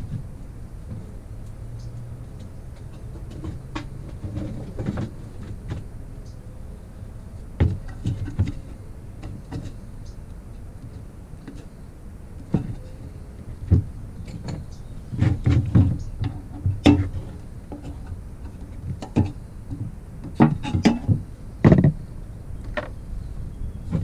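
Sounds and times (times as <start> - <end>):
tools and metal parts clunking: 12.4 - 22.0.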